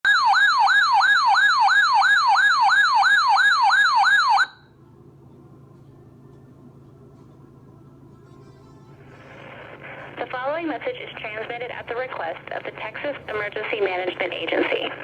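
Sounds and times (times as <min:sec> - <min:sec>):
electronic siren rising and falling: 0:00.1 - 0:04.6
faint low hum: 0:04.5 - 0:15.0.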